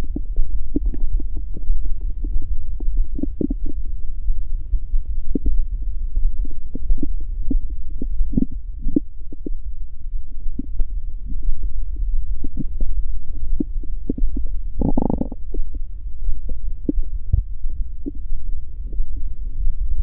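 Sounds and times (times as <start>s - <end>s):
stomach growling: 0.0s - 3.8s, 5.0s - 9.6s, 12.3s - 18.3s
gurgles and pops: 13.6s - 15.7s.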